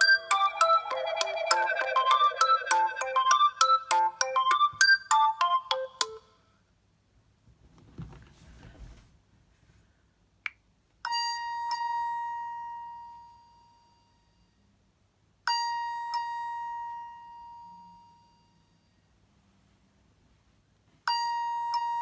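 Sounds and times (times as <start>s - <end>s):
bell-like ringtone chime: 0.0s - 6.2s.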